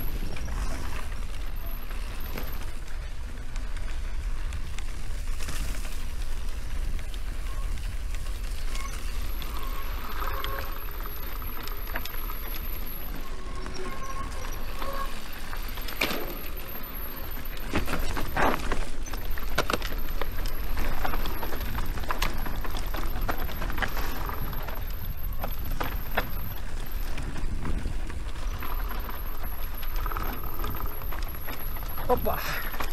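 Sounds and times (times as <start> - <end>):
mountain bike rattling over trail: 0.0 - 32.9
wind rumble on microphone: 17.3 - 32.9.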